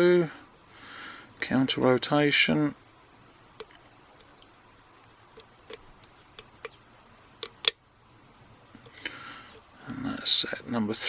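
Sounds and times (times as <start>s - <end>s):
padlock sharp clicks: 5.3s - 6.8s, 7.4s - 7.8s.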